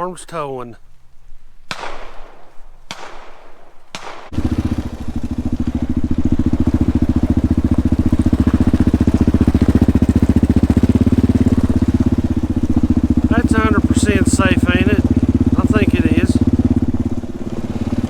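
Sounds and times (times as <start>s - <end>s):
engine running: 3.9s - 18.0s.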